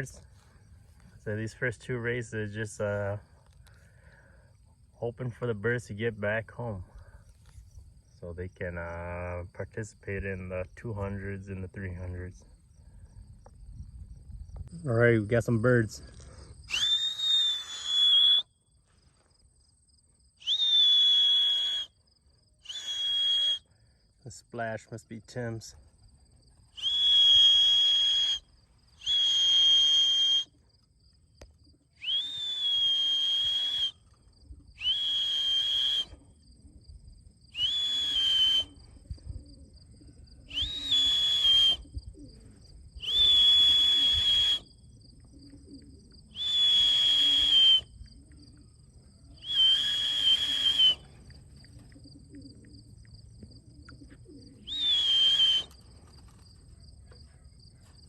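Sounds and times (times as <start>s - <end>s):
crickets chirping faintly: 0.0s - 58.0s
long steady whistle notes: 16.6s - 18.7s, 20.4s - 22.0s, 22.6s - 23.8s, 26.7s - 30.6s, 32.0s - 34.1s, 34.8s - 36.2s, 37.5s - 39.0s, 40.5s - 41.9s, 43.0s - 44.8s, 46.3s - 48.0s, 49.4s - 51.2s, 54.6s - 55.8s.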